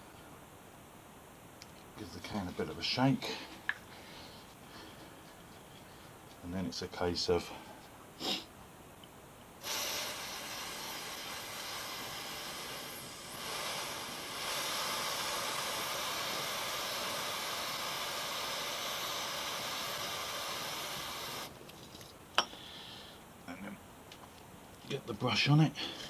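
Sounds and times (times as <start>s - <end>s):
aerosol can spraying hiss: 9.6s - 21.5s.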